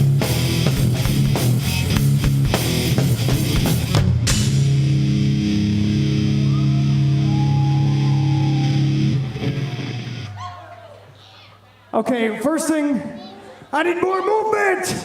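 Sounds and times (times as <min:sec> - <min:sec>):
drum hits: 0:00.0 - 0:05.1
electric guitar and bass chord: 0:00.0 - 0:10.3.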